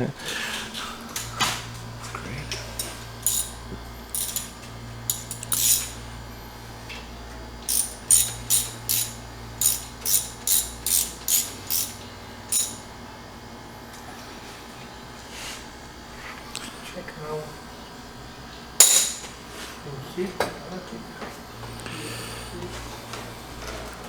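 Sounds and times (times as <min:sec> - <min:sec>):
ratchet wrench clicking: 0:02.8 - 0:04.5, 0:05.1 - 0:06.0, 0:07.7 - 0:12.8.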